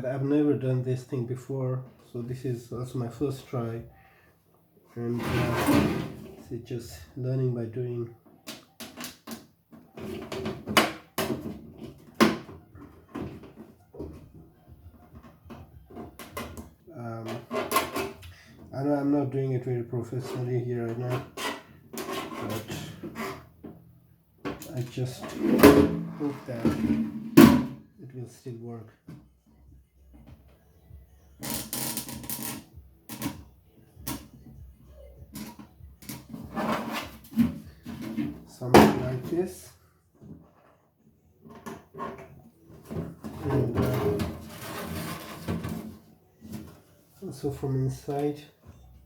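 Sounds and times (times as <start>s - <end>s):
tool scraping plastic: 16.2s - 18.2s, 20.2s - 23.5s, 35.4s - 38.4s, 41.6s - 46.7s.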